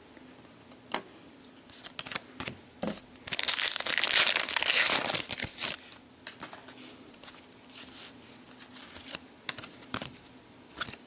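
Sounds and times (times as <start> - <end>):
foil wrapper crinkling: 3.2 - 5.8
cards being handled: 3.2 - 11.0.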